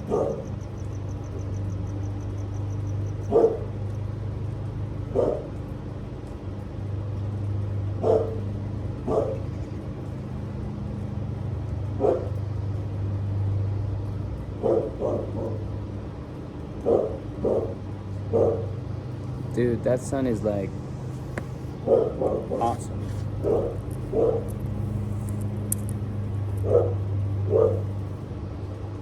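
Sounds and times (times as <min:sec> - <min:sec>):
dog barking: 0:00.0 - 0:00.5, 0:03.3 - 0:03.8, 0:05.1 - 0:05.6, 0:08.0 - 0:09.5, 0:12.0 - 0:12.4, 0:14.6 - 0:15.7, 0:16.8 - 0:18.8, 0:21.8 - 0:24.6, 0:26.6 - 0:27.9
steady low hum: 0:00.0 - 0:29.0.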